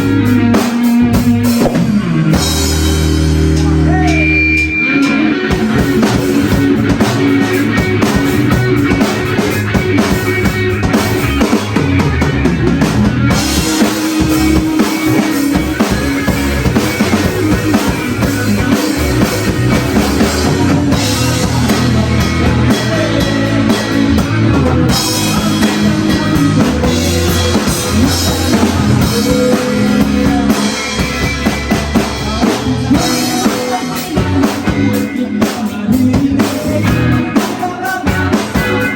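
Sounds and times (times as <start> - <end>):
drum kit beat: 0.0 - 38.9
rock band playing: 0.0 - 38.9.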